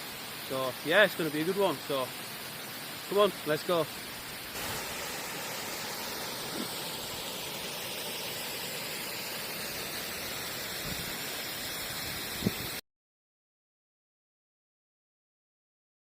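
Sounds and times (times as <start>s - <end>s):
small waterfall rushing: 0.0s - 12.8s.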